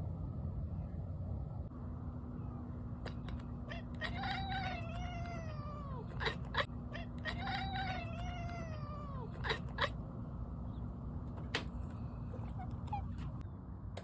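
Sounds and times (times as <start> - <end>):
cat clicking chatter: 3.1 - 10.0
cat meowing calls: 3.1 - 10.0.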